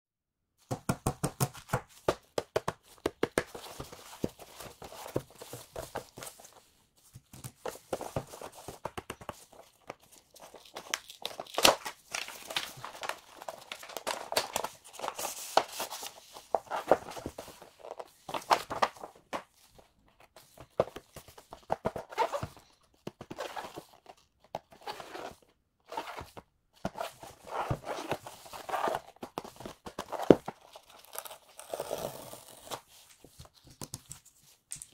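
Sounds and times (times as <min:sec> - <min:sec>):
cardboard and plastic rustling: 0:02.9 - 0:24.0.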